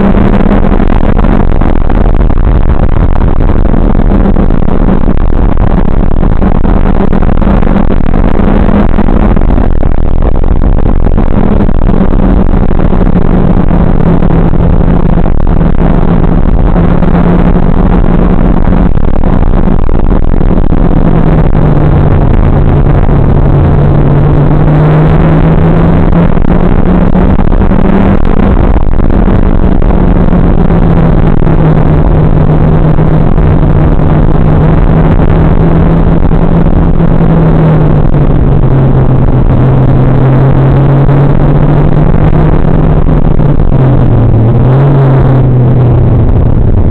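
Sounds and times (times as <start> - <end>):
car engine revving hard: 0.0 - 2.7, 20.4 - 46.9.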